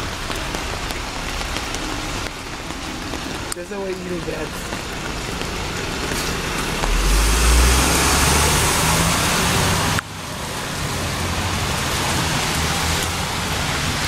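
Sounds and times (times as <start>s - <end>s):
rain hissing: 0.0s - 14.0s
wet road traffic: 0.0s - 14.0s
passing vehicle rumble: 5.6s - 14.0s.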